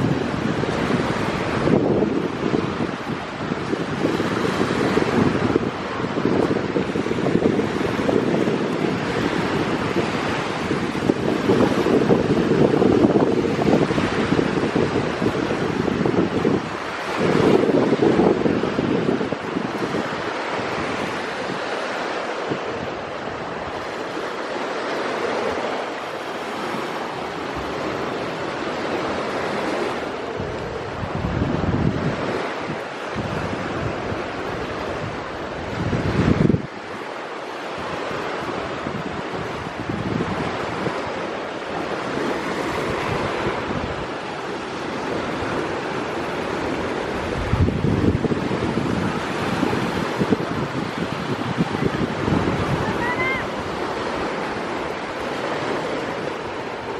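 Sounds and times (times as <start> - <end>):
waves washing in: 0.0 - 56.9
wind buffeting the microphone: 0.0 - 56.9.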